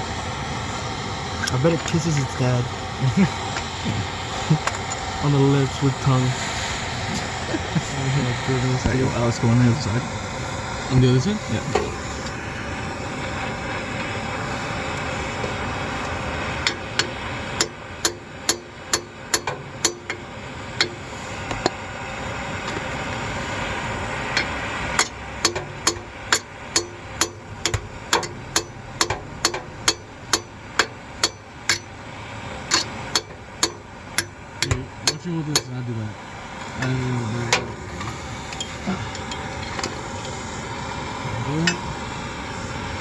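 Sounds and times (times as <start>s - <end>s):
steady hiss: 0.0s - 43.0s
hammer striking metal: 16.6s - 20.2s, 25.0s - 31.9s, 32.7s - 35.7s.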